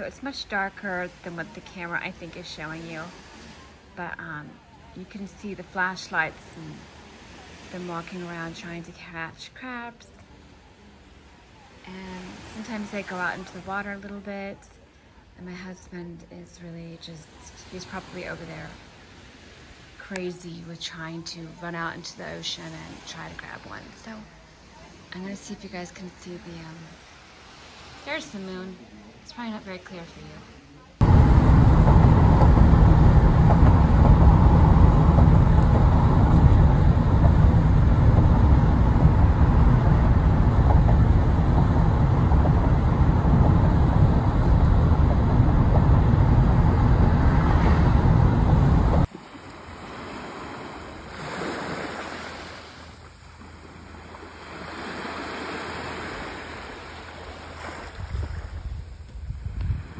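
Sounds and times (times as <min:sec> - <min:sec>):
ocean surf: 0:00.0 - 0:15.4, 0:17.2 - 0:59.9
waves washing onto beach: 0:00.0 - 0:15.4, 0:17.2 - 0:59.9
wind buffeting microphone: 0:31.0 - 0:49.1, 0:56.0 - 0:59.9.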